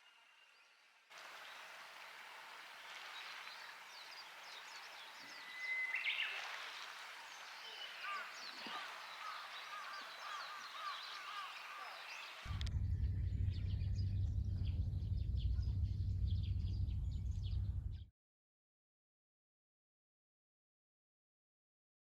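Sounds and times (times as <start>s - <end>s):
birds singing and chirping: 3.0s - 12.6s.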